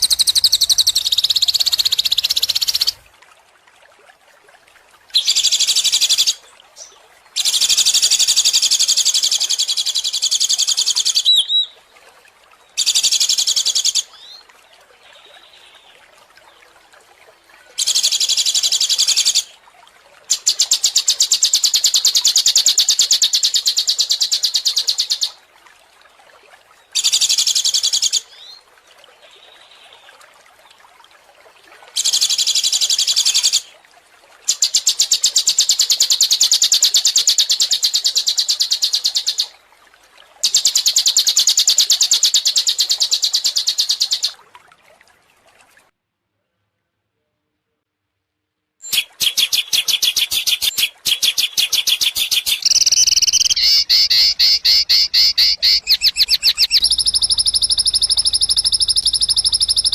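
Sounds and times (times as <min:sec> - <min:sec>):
songbird rattling high trills: 0:52.2 - 0:59.9.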